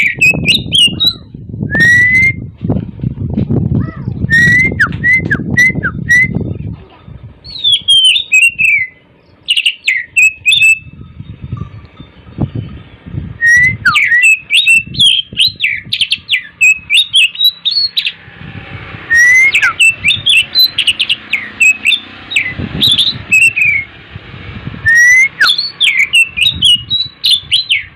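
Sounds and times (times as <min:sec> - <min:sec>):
songbird singing: 0:00.0 - 0:02.5, 0:03.6 - 0:27.9.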